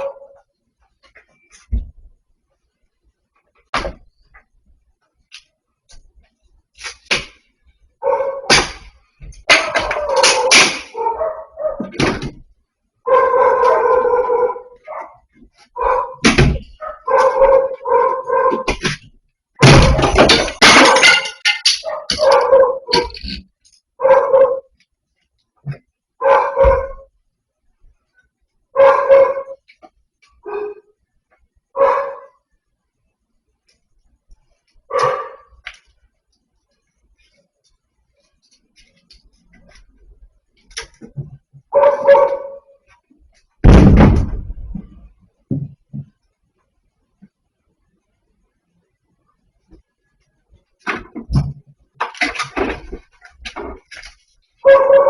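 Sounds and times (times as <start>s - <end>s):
dog barking: 0.0s - 0.4s, 8.0s - 8.5s, 9.6s - 12.0s, 13.0s - 18.8s, 21.8s - 23.1s, 24.0s - 24.7s, 26.2s - 27.1s, 28.7s - 29.6s, 30.4s - 30.9s, 31.7s - 32.4s, 34.9s - 35.6s, 41.7s - 42.8s, 54.6s - 55.0s
knocks and bangs: 8.5s - 11.0s, 18.6s - 23.4s, 43.6s - 46.2s.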